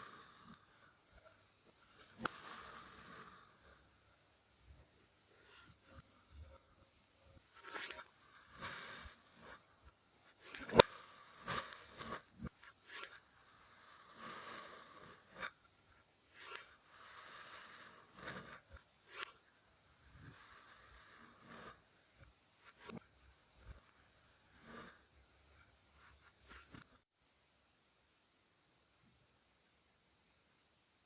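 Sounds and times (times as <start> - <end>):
sand scraping and crunching: 0.0 - 0.9, 1.8 - 3.8, 7.5 - 15.6, 16.3 - 19.4, 20.0 - 21.9.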